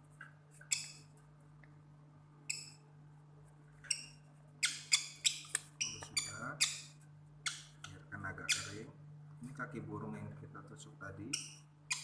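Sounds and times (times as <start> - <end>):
faint low hum: 0.0 - 12.0
bird squeaking: 3.8 - 8.9, 11.2 - 12.0.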